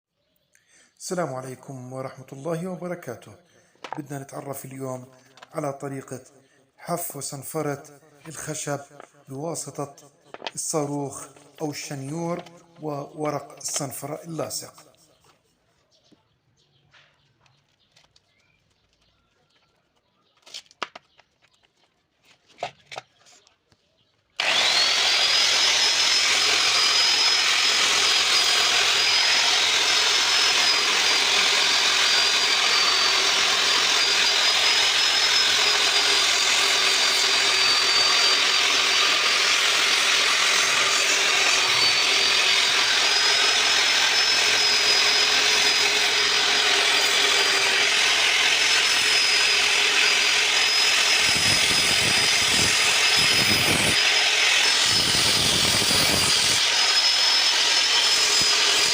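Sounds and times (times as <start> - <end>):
power sander grinding wood: 3.8 - 6.0, 7.5 - 15.3, 24.4 - 58.9.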